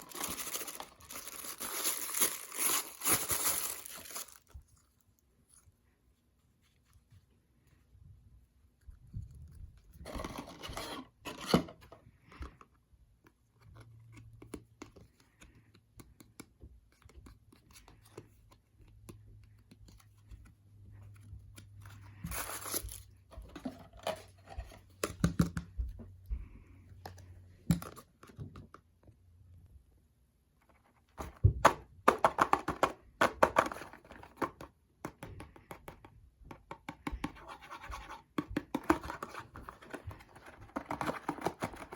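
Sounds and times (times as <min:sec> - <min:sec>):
plastic packaging tearing and crinkling: 0:00.0 - 0:04.5.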